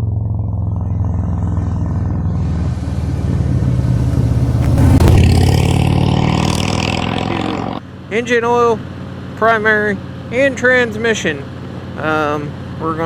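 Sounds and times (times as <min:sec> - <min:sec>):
motorcycle engine running: 0:00.0 - 0:08.2.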